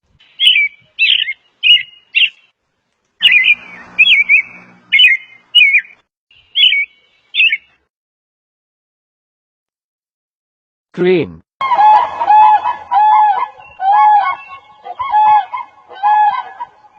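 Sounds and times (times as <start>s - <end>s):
robin song: 0.1s - 2.6s, 3.2s - 7.9s, 11.0s - 16.9s.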